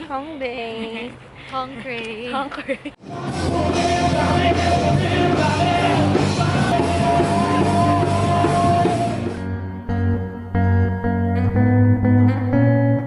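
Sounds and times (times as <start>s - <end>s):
band music with singing: 3.0s - 9.5s.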